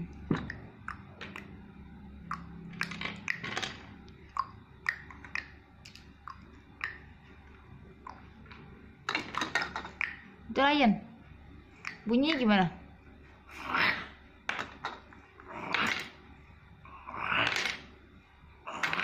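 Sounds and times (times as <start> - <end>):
plastic toys clicking together: 2.3 - 7.1, 9.0 - 10.2, 18.7 - 19.0.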